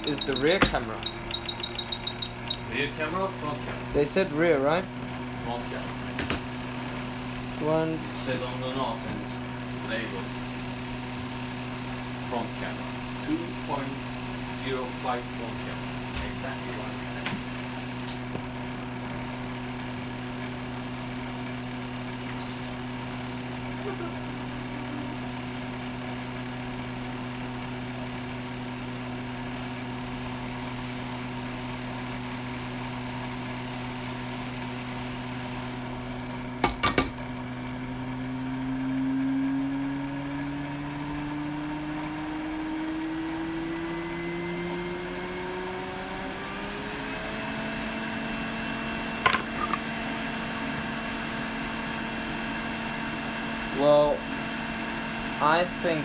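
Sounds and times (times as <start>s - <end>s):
sharp clicks: 0.0s - 2.7s
blower fan humming: 0.0s - 56.0s.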